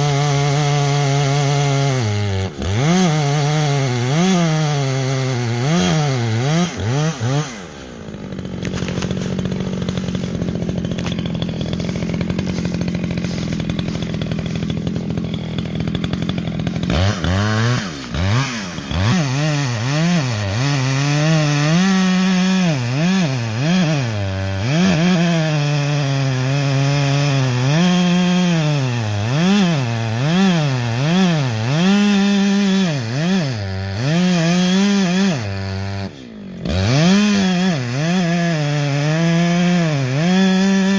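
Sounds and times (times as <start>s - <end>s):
chainsaw running: 0.0s - 40.9s.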